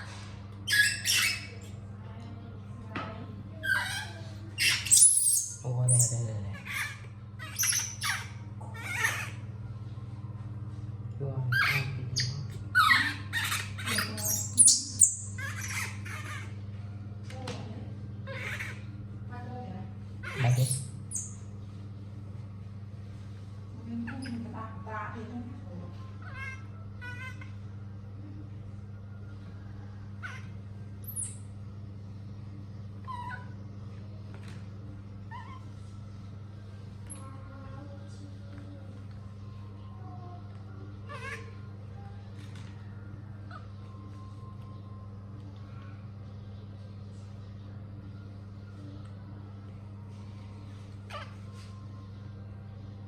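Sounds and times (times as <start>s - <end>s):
baby monkey squealing: 0.0s - 1.8s, 3.6s - 9.5s, 11.5s - 16.6s, 18.3s - 18.9s, 20.2s - 21.5s, 24.0s - 24.5s, 26.2s - 27.6s, 30.2s - 31.5s, 33.0s - 33.6s, 35.3s - 35.8s, 41.0s - 41.7s, 51.1s - 51.4s
steady low hum: 0.0s - 53.0s.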